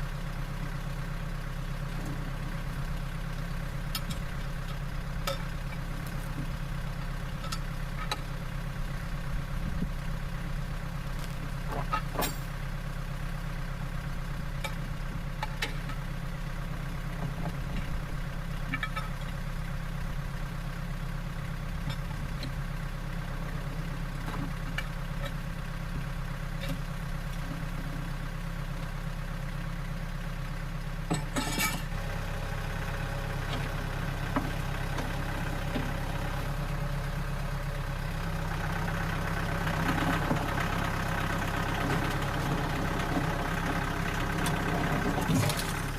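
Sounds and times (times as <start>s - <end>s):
engine idling: 0.0s - 45.9s.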